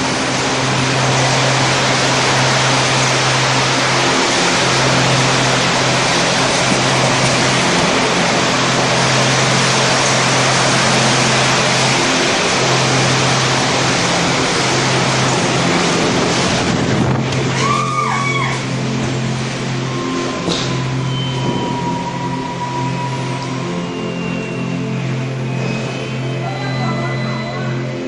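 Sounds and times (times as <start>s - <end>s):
strong wind gusts: 0.0s - 17.9s
heavy rain: 0.0s - 28.0s
low hum: 0.0s - 28.0s.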